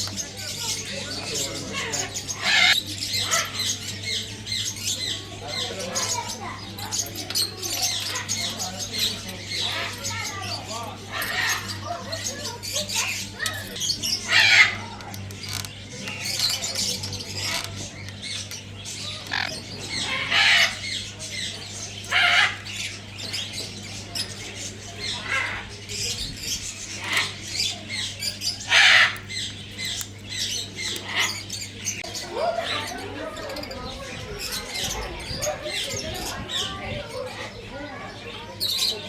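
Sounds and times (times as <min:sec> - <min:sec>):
parrots squawking shrilly: 0:01.2 - 0:23.4, 0:25.0 - 0:33.5.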